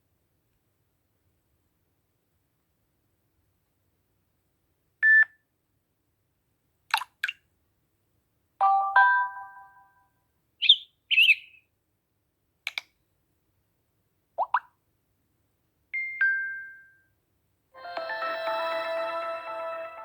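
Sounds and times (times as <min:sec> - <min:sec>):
two-note chime: 0:17.8 - 0:20.0.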